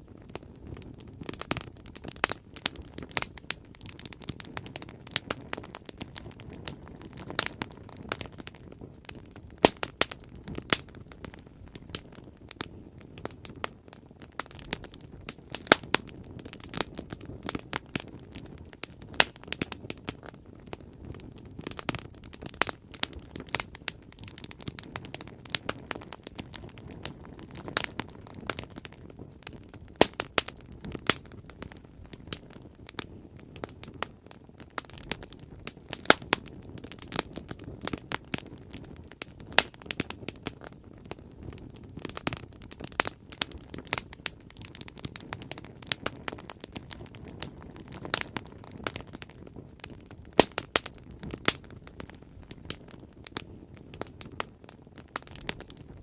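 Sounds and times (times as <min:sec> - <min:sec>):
bonfire crackling: 0:00.0 - 0:56.0
sharp pops and snaps: 0:30.0 - 0:31.3, 0:50.4 - 0:51.6.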